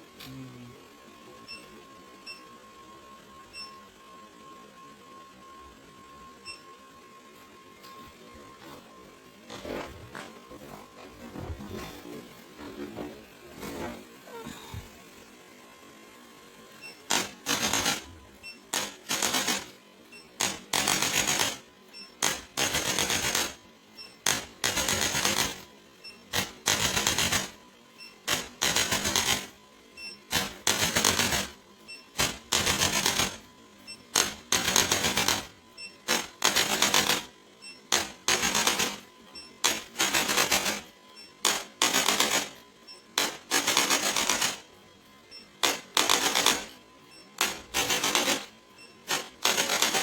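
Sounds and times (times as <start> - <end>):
small motorized device rattling: 16.8 - 27.6, 28.2 - 33.5, 34.1 - 44.7, 45.3 - 50.0.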